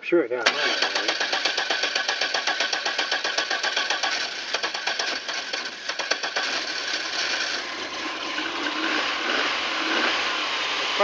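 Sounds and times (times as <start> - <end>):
engine starter cranking: 0.4 - 7.6.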